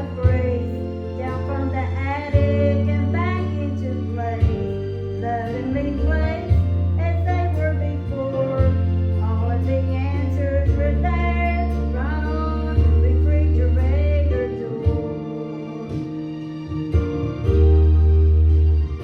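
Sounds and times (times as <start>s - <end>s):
woman singing slow song: 0.0s - 16.2s
held bass notes: 0.0s - 19.0s
instrumental accompaniment: 0.0s - 19.0s.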